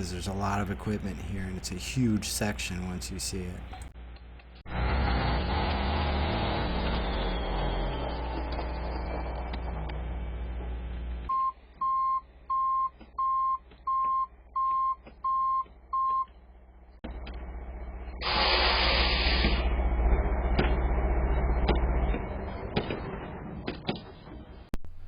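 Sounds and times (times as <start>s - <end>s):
low machine rumble: 0.0s - 12.6s, 15.9s - 25.0s
reversing alarm beeps: 11.3s - 16.3s
loud hiss: 18.2s - 19.7s.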